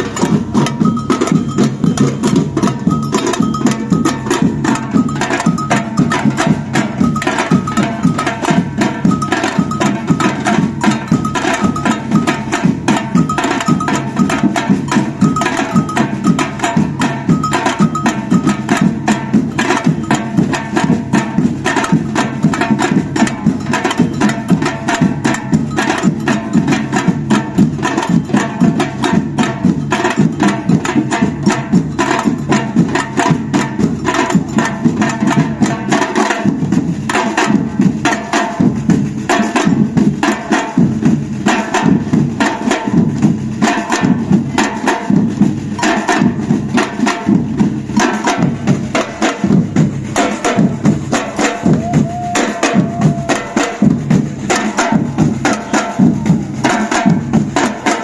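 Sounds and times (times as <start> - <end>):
high repeating bell: 0.0 - 33.5
samba percussion ensemble: 0.0 - 58.0.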